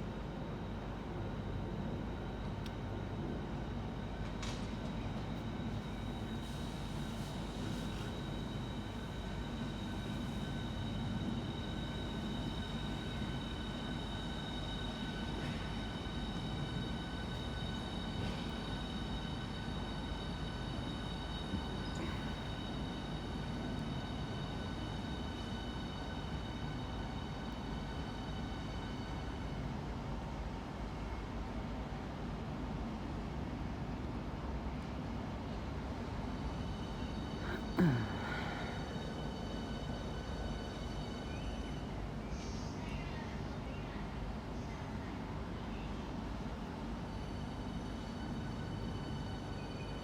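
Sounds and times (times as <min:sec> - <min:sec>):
electric train whine: 0:00.0 - 0:50.0.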